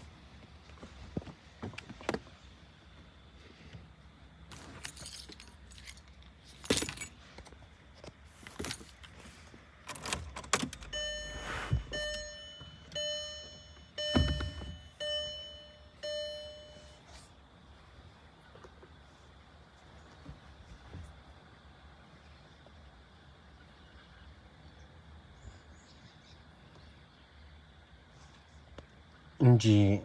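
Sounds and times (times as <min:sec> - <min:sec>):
keys jingling: 0:04.5 - 0:07.2, 0:08.3 - 0:16.2
car warning chime beeping: 0:10.5 - 0:17.2.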